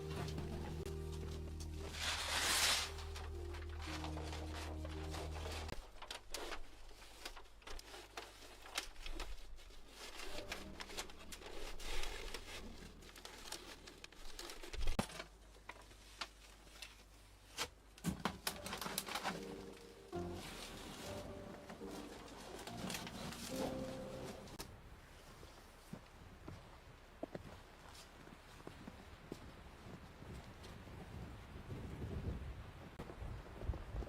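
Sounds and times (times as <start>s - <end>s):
fabric crinkling and rustling: 0.0s - 24.6s.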